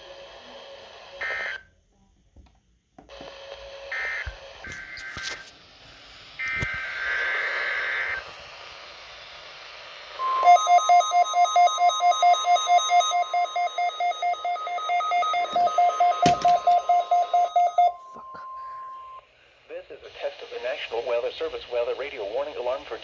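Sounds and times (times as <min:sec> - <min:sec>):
rapid alarm beeping: 0:10.2 - 0:19.2
steady warning alarm tone: 0:10.2 - 0:19.2.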